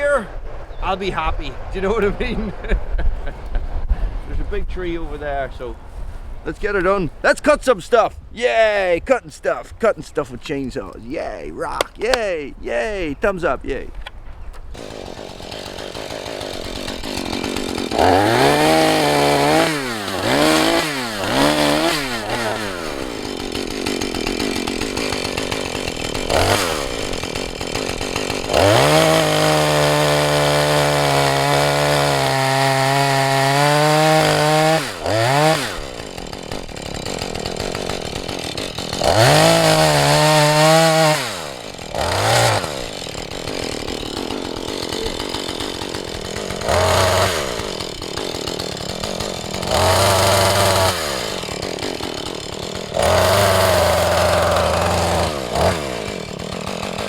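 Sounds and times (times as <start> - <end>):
chainsaw cutting wood: 14.6 - 57.0
chainsaw idling and revving: 14.7 - 57.0.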